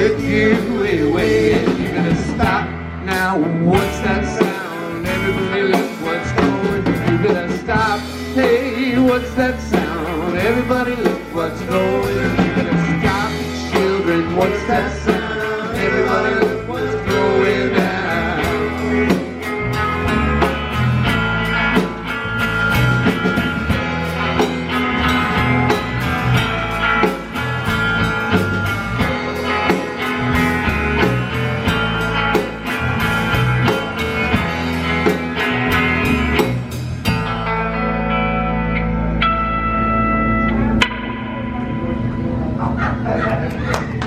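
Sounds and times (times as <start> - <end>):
live rock band playing: 0.0 - 44.0
guitar chord ringing: 22.3 - 43.2.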